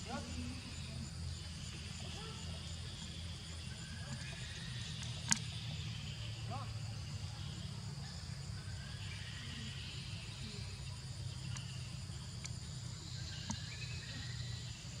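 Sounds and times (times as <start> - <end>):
low steady hum: 0.0 - 15.0
insect chirring: 0.1 - 15.0
faint clicks: 4.9 - 5.5.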